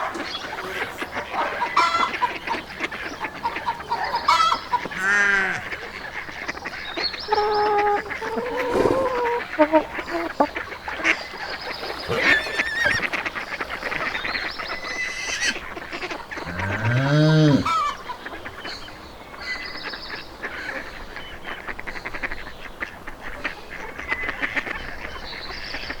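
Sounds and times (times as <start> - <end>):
short bird calls chattering: 0.1 - 15.6
long low animal call: 0.4 - 6.0, 7.1 - 15.6, 16.4 - 18.0.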